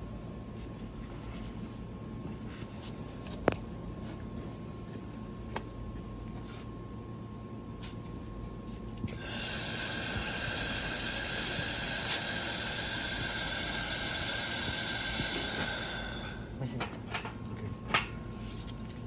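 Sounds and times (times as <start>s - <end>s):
faint steady whistling tones: 9.1s - 16.6s
laser welder hissing: 9.1s - 16.6s.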